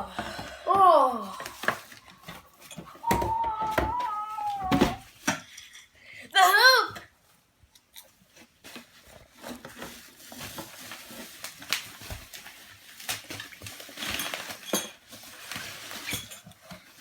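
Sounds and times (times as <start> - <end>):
packaging rustling and crinkling: 1.2 - 5.4, 8.1 - 17.0.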